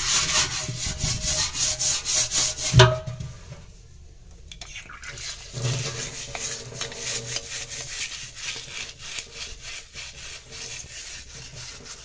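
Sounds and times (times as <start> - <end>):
scrubber scouring stainless steel: 0.0 - 2.9, 4.8 - 12.0.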